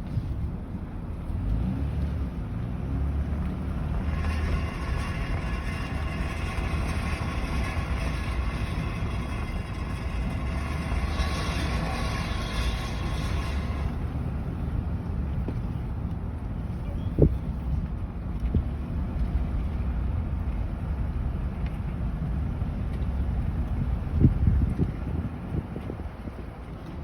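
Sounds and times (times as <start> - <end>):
low engine rumble: 0.0 - 27.0
car rubbing noise while turning: 3.0 - 14.1.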